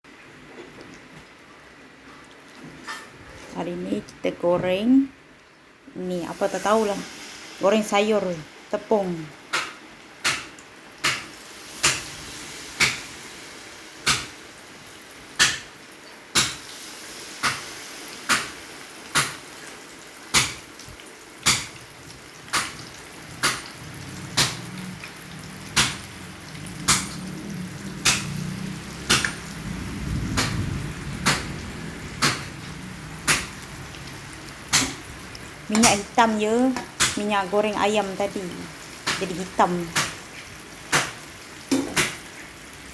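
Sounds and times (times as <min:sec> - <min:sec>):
fritters deep-frying in oil: 0:00.0 - 0:42.9
sharp knocks: 0:30.3 - 0:30.6, 0:31.2 - 0:31.5.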